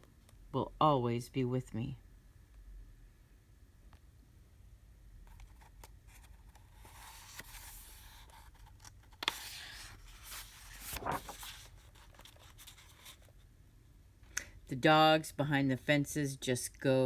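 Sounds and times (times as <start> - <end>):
paper page turning: 5.3 - 13.4.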